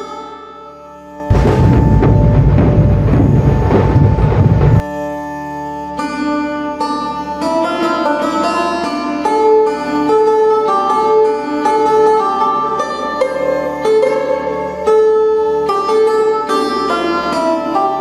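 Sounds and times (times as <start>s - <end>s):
plucked string instrument melody: 1.1s - 18.0s
loud dense noise: 1.3s - 4.8s.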